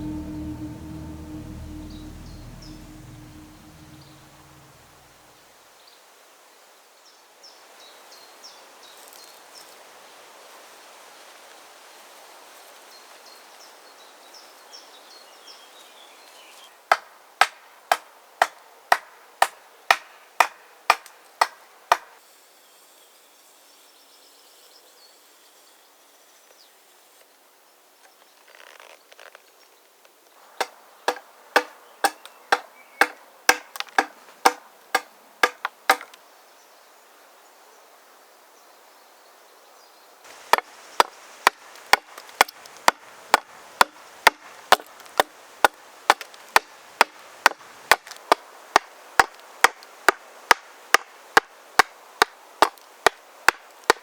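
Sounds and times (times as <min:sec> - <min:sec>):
axe striking wood: 0:30.6 - 0:36.1, 0:40.5 - 0:49.8.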